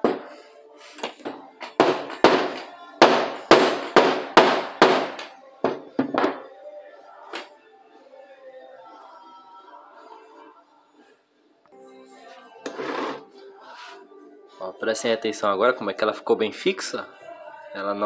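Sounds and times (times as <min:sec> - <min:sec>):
faint background music: 0:00.0 - 0:18.0
hammer striking metal: 0:01.6 - 0:06.4.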